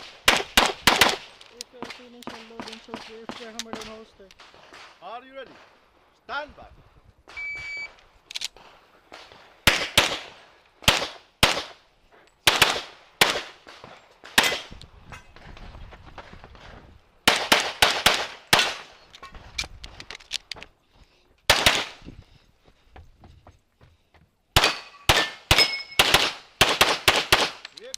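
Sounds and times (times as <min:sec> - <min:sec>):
pistol shots: 0:00.0 - 0:05.6, 0:09.1 - 0:11.8, 0:12.4 - 0:14.7, 0:17.2 - 0:18.9, 0:21.5 - 0:22.0, 0:24.6 - 0:27.6.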